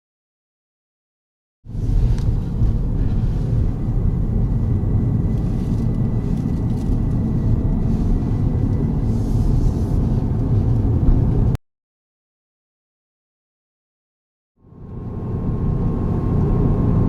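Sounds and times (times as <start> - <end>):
car engine and road noise: 1.7 - 11.6, 14.6 - 17.0.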